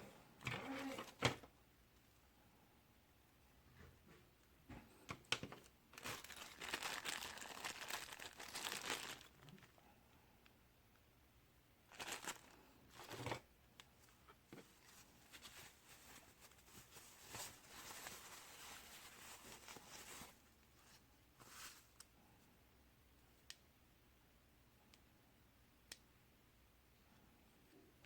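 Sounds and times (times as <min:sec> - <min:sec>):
hands rustling packaging: 0:06.0 - 0:09.8, 0:11.9 - 0:13.4, 0:14.5 - 0:22.0.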